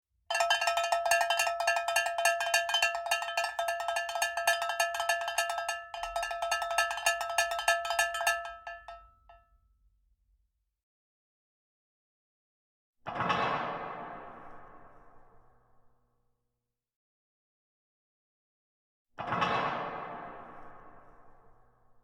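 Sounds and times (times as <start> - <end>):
metal bell struck rapidly: 0.3 - 9.0.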